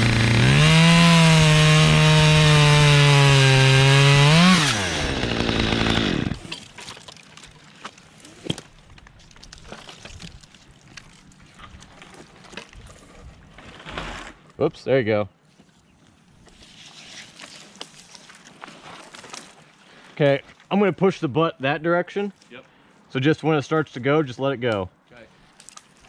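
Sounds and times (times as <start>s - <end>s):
chainsaw cutting tree limb: 0.0s - 6.8s.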